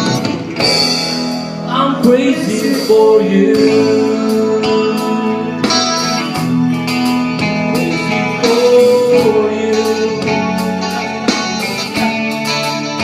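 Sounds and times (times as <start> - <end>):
guitar gliding notes: 0.0 - 13.0
live band playing a ballad: 0.0 - 13.0
person singing: 1.7 - 6.5, 7.6 - 11.4.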